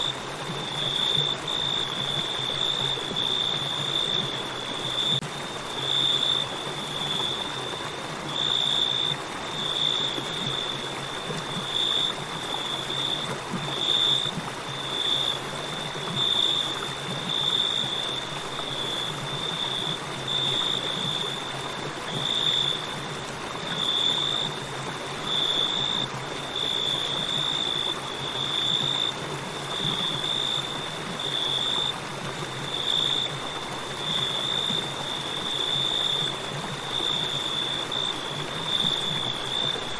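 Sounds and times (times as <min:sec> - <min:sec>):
crickets chirping: 0:00.0 - 0:39.9
river water rushing: 0:00.0 - 0:39.9.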